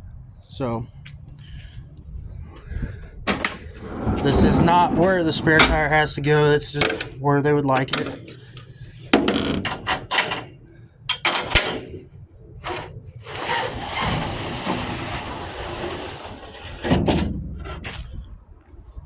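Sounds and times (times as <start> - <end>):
tray sliding out with rumble: 3.3 - 7.0, 12.6 - 18.1.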